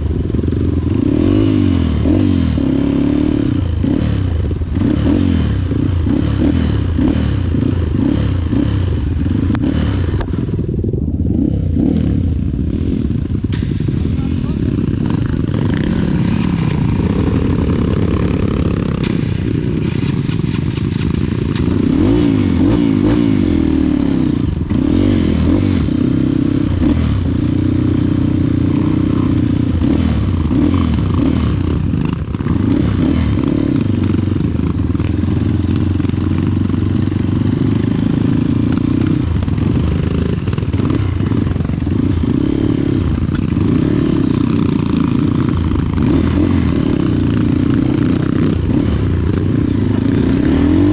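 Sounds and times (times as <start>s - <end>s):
motorcycle engine revving: 0.0s - 50.9s.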